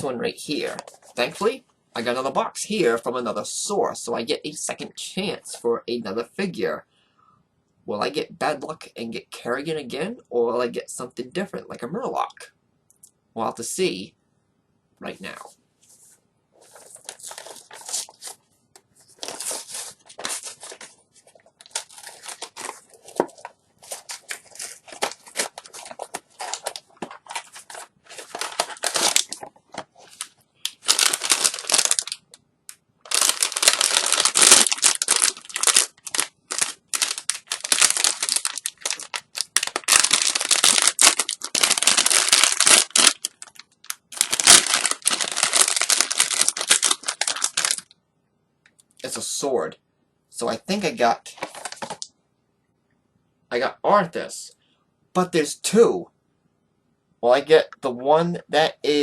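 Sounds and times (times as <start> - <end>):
cardboard and plastic crinkling: 16.6 - 18.4, 19.0 - 32.3, 33.1 - 47.9, 51.3 - 52.0.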